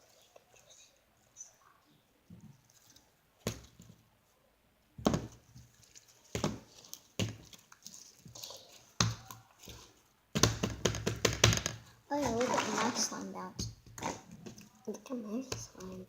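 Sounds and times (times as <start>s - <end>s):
slime popping and slapping: 5.0s - 13.0s.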